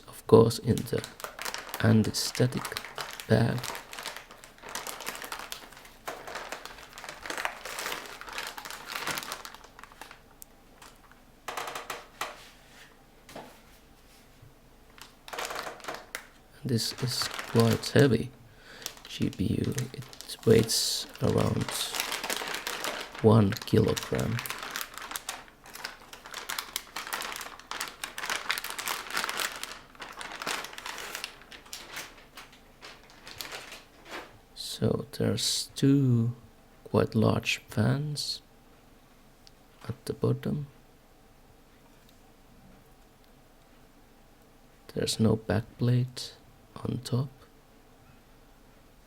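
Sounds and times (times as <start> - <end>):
plastic bag crinkling: 0.5 - 12.5, 14.9 - 34.3.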